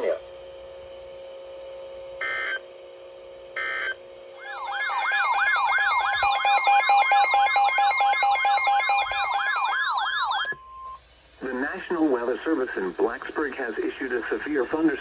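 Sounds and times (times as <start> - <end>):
steady electronic tone: 2.2 - 2.6, 3.6 - 10.6
digital data burst screech: 3.6 - 10.6
warbling electronic alert tone: 3.6 - 10.6.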